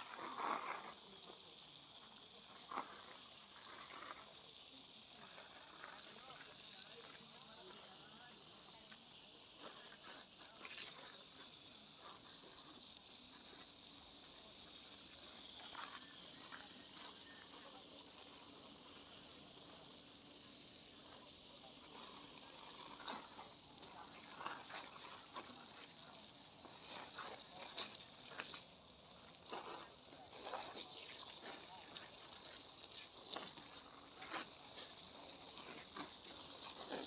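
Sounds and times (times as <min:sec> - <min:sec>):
garden hose spraying water: 0:00.0 - 0:37.0.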